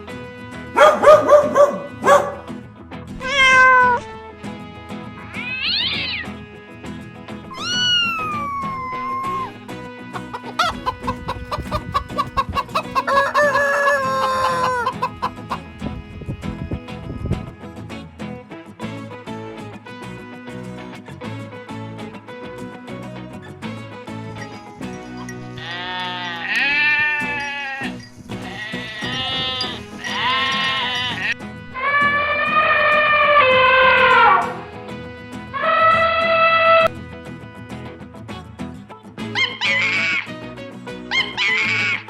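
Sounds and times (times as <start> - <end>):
background music: 0.0 - 42.0
goat bleating: 3.2 - 4.1, 5.2 - 17.6, 25.4 - 34.7, 39.4 - 42.0
rooster clucking: 7.6 - 9.5, 10.1 - 15.9, 39.4 - 40.3, 41.1 - 42.0
rooster crowing: 10.3 - 15.7.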